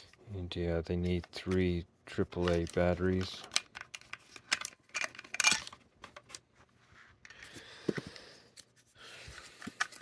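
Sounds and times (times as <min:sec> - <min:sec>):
clicks and taps handling objects: 0:00.0 - 0:06.5.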